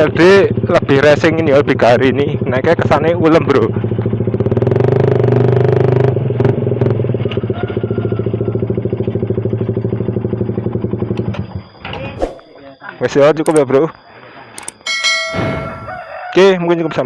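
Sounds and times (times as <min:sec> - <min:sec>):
motorcycle engine idling: 0:00.0 - 0:11.8.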